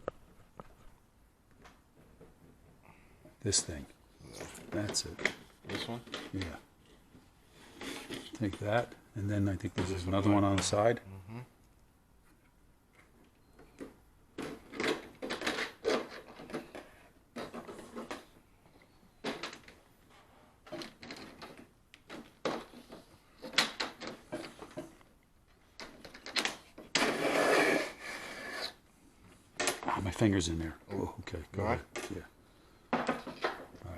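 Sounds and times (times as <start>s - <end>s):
rasping noise: 26.9s - 28.8s.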